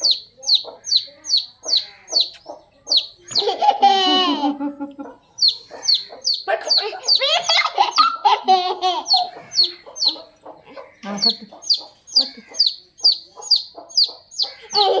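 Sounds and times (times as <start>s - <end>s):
chick peeping: 0.0s - 15.0s
voices and laughter: 3.2s - 5.7s, 6.5s - 12.7s.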